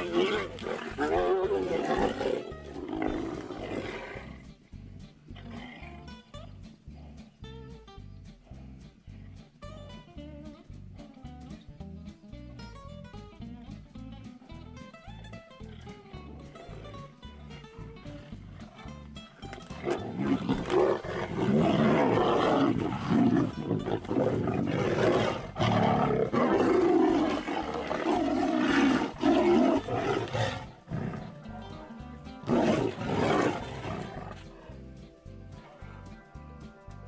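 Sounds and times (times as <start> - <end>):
tigers roaring: 0.0 - 4.6, 19.6 - 31.8, 32.4 - 34.8
background music: 0.0 - 37.0.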